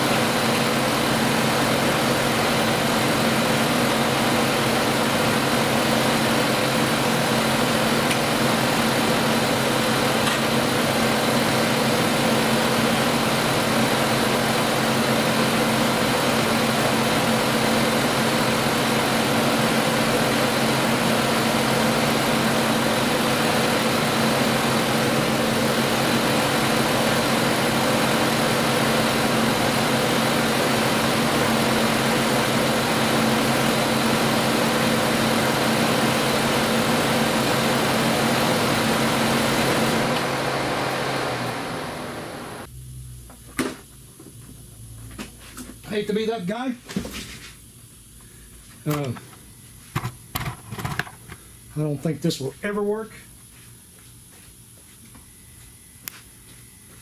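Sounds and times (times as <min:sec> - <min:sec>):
car engine idling: 0:00.0 - 0:42.7.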